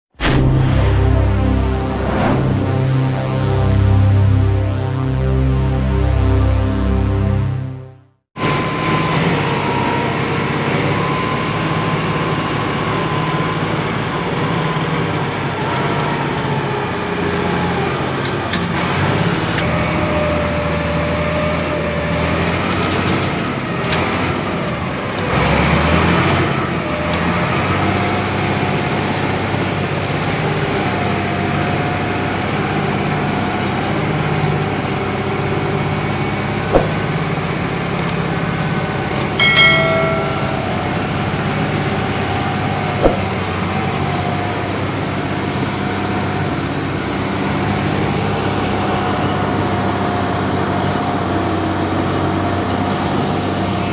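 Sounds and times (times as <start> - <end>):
heavy diesel engine running: 8.4 - 53.9
sharp knocks: 36.7 - 37.1.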